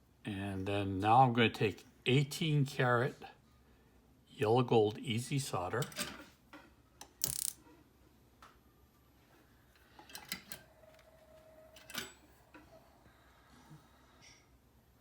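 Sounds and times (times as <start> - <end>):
metal tools clicking and tapping: 7.0 - 7.6.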